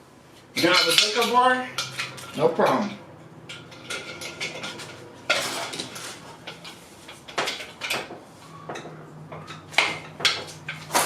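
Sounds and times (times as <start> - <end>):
steel hand tools clinking: 0.6 - 8.0.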